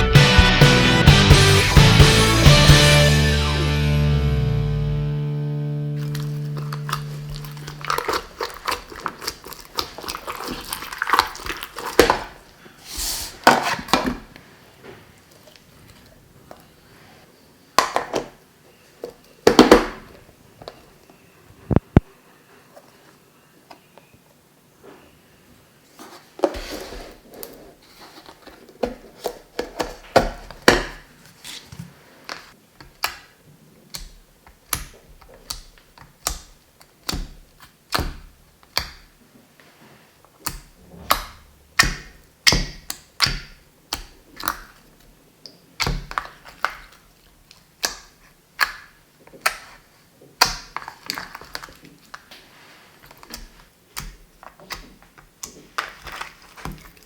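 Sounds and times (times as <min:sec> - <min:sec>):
slime squeezed by hand: 0:06.0 - 0:12.2.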